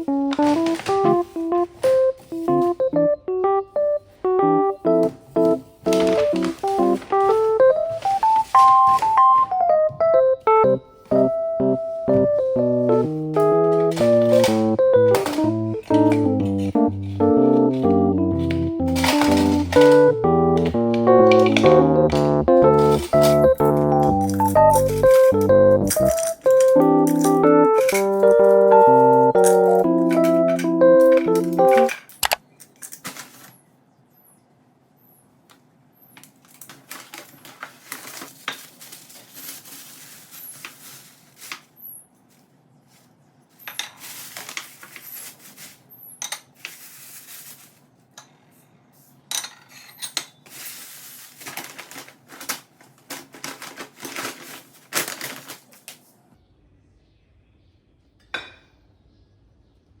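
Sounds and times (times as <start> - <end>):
small hard objects clattering: 13.4 - 32.1, 36.3 - 42.4, 43.5 - 47.9, 50.4 - 56.0.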